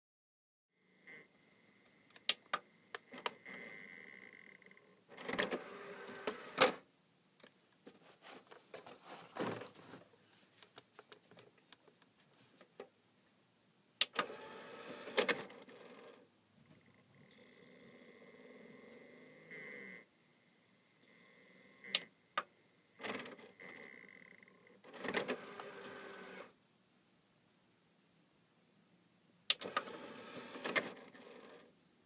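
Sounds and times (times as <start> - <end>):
disc tray motor whirring: 5.1 - 6.8, 14.2 - 16.2, 24.9 - 26.5, 29.6 - 31.7.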